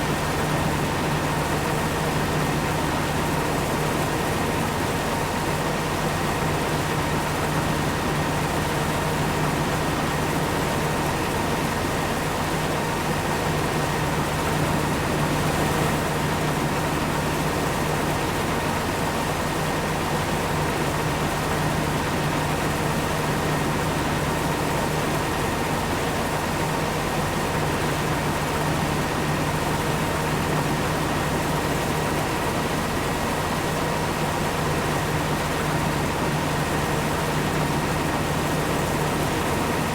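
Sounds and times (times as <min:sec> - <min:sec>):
engine droning steadily: 0:00.0 - 0:39.9.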